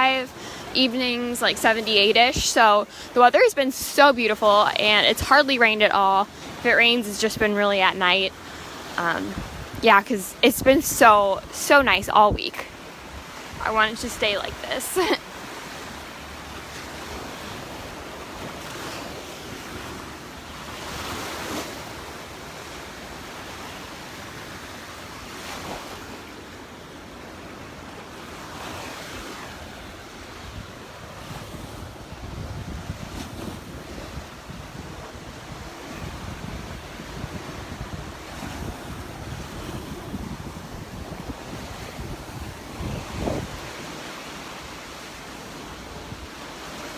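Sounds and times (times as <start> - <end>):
wind buffeting microphone: 0.0 - 15.2, 28.5 - 46.9
surf washing onto beach: 0.0 - 46.9.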